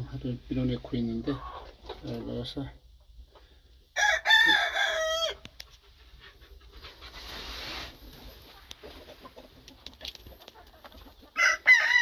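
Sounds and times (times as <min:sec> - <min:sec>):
rooster crowing: 0:04.0 - 0:05.5, 0:11.4 - 0:12.0.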